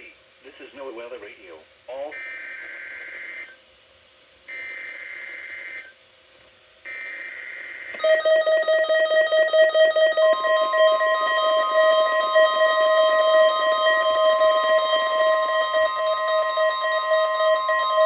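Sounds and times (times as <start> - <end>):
pulsing alarm tone: 8.0 - 18.0
steady higher tone: 8.0 - 18.0
warbling data bursts: 8.0 - 18.0.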